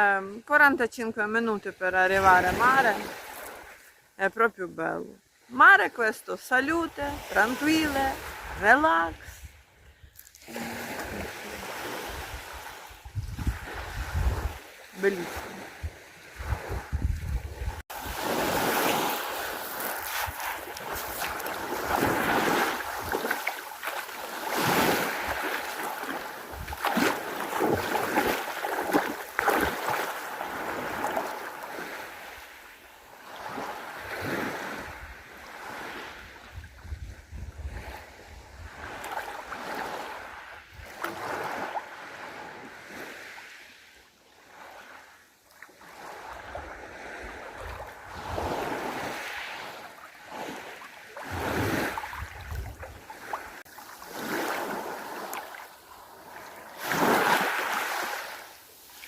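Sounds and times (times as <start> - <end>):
sea waves breaking on shore: 1.3 - 59.0
wind buffeting microphone: 11.0 - 14.6, 15.8 - 18.8, 36.5 - 39.0, 51.3 - 53.1.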